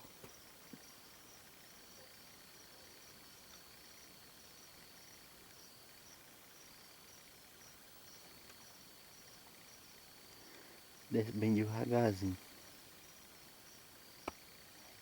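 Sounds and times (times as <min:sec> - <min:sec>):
insect chirps: 0:00.0 - 0:15.0.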